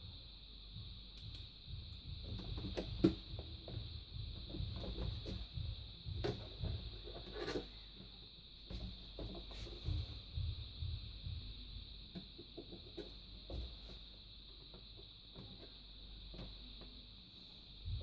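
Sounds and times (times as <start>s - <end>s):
faint high hum: 0.0s - 18.0s
handling knocks and rubbing: 2.0s - 11.4s, 12.1s - 16.9s.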